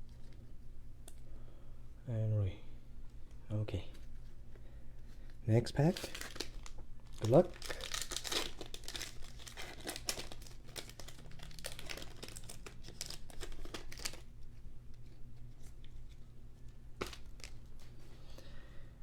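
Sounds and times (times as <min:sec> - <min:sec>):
wrapper crinkling and tearing: 0:05.7 - 0:14.6, 0:17.0 - 0:18.0.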